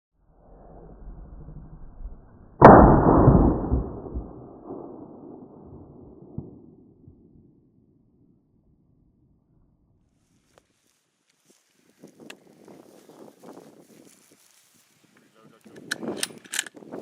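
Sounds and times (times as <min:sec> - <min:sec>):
rifle shot: 0:02.6 - 0:06.9
wind rumbling on microphone: 0:11.8 - 0:17.0.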